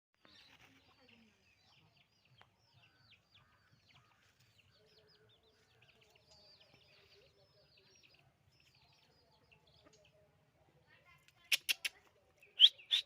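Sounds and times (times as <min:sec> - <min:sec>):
high chirps: 0:12.6 - 0:13.0.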